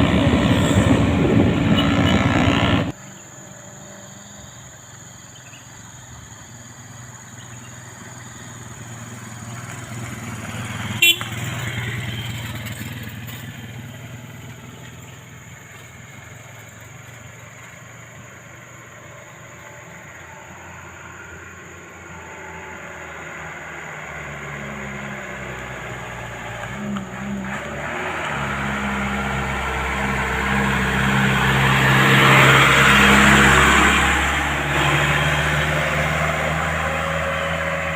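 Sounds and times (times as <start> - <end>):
vehicle engine running: 0.0 - 3.0.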